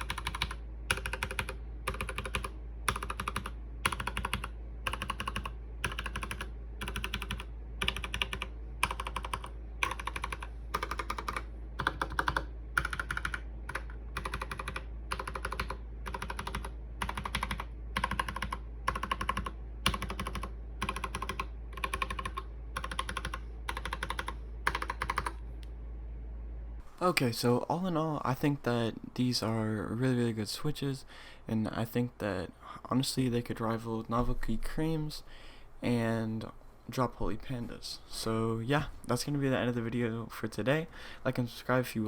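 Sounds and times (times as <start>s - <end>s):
mechanical keyboard typing: 0.0s - 25.4s
low steady hum: 0.0s - 42.0s.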